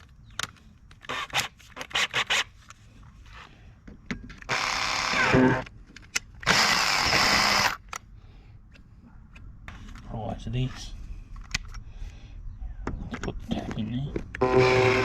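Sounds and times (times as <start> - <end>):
electric drill drilling metal: 4.5 - 5.6, 6.4 - 7.8, 14.4 - 15.0.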